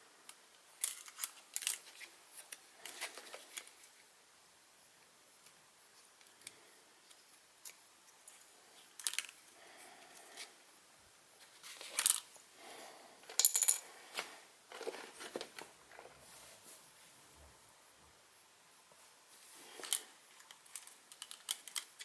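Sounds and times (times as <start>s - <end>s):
small hard objects clicking: 19.9s - 22.0s.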